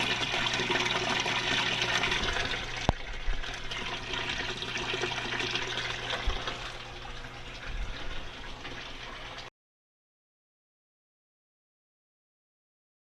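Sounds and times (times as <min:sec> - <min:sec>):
water gurgling through siphon: 0:00.0 - 0:09.5.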